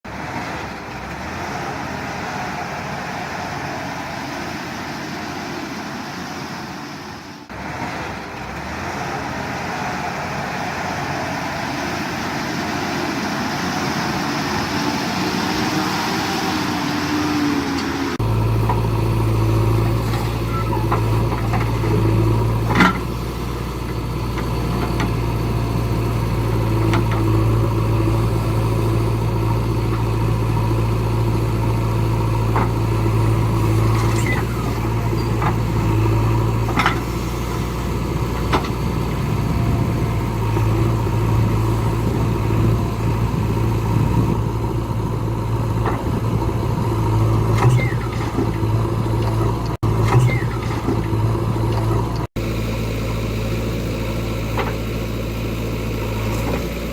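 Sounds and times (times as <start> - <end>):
heavy diesel engine running: 0.0 - 56.9.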